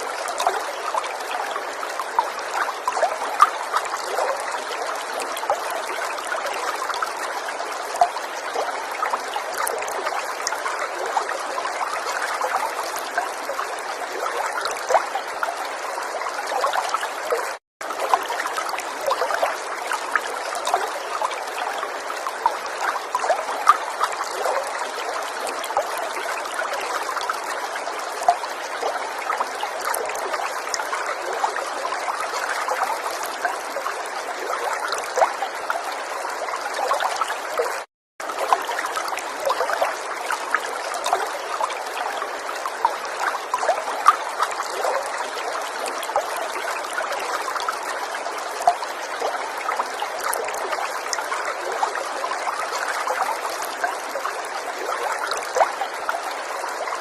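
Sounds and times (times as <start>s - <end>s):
river water flowing: 0.0s - 57.0s.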